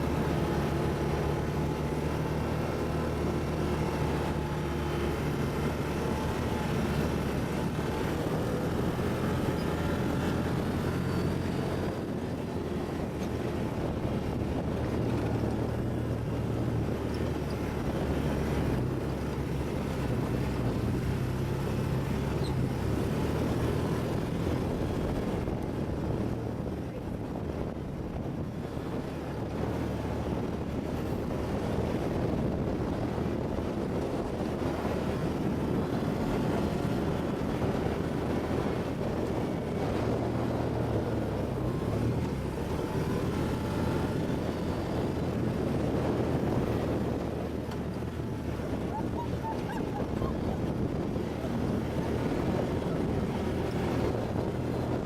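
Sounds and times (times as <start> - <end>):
atv engine running: 0.0 - 55.0.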